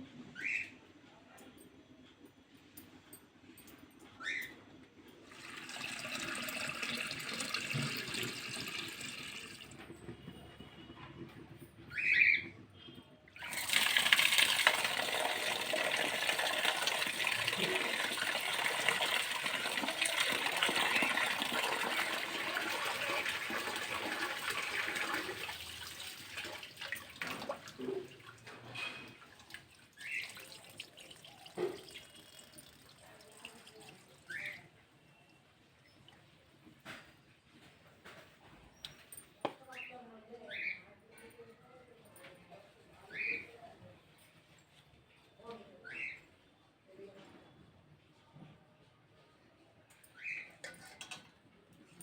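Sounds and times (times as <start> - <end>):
water running from a tap: 5.3 - 9.8, 13.4 - 28.5, 29.1 - 34.6.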